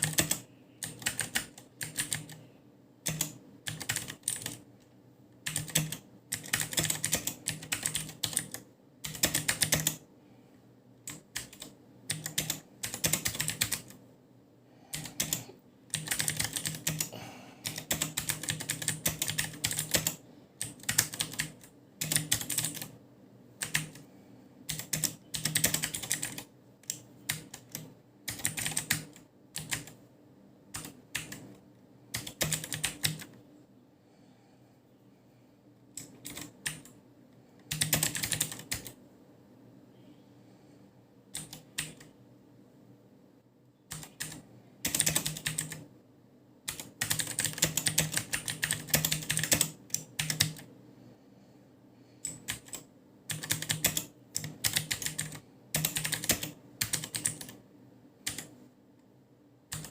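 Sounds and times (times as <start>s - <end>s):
mechanical keyboard typing: 0.0s - 2.4s, 3.0s - 4.7s, 5.4s - 10.0s, 11.0s - 14.0s, 14.9s - 23.0s, 23.6s - 24.1s, 24.7s - 30.0s, 30.7s - 33.4s, 36.0s - 37.0s, 37.6s - 39.0s, 41.3s - 42.1s, 43.9s - 45.9s, 46.7s - 50.7s, 52.2s - 57.6s, 58.2s - 58.5s, 59.7s - 59.9s.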